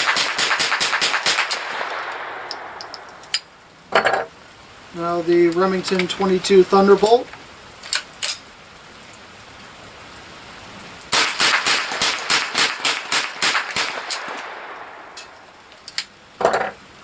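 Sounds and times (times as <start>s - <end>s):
rifle shots: 0.0s - 3.0s, 11.1s - 15.2s.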